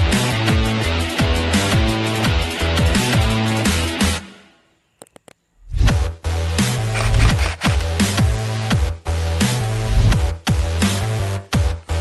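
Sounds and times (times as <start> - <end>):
dubstep music with heavy bass: 6.9 - 8.0.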